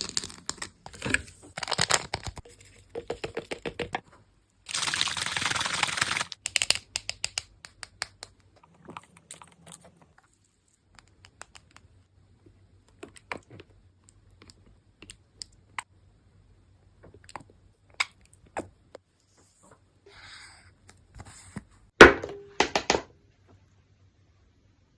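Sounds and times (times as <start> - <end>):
paper crumpling crackle: 0.0 - 2.8.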